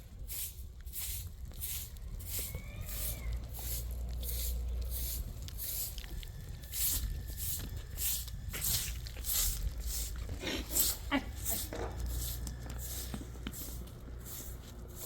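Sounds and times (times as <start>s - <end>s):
low rumble: 0.0s - 10.7s.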